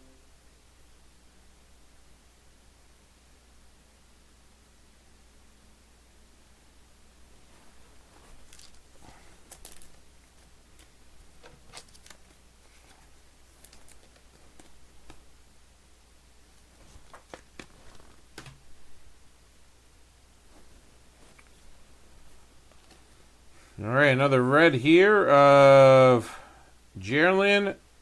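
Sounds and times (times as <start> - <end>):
trading cards clicking and sliding: 10.8 - 15.2.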